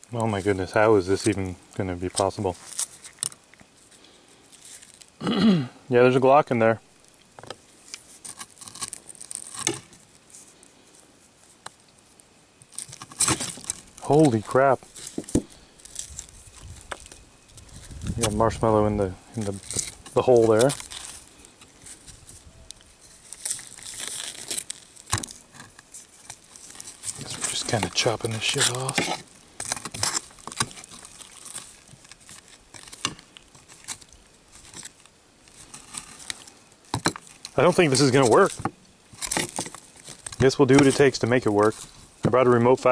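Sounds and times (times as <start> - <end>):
food crunching and tearing: 1.2 - 5.2, 7.0 - 18.6, 19.2 - 42.2
knife chopping and scraping: 28.6 - 30.8.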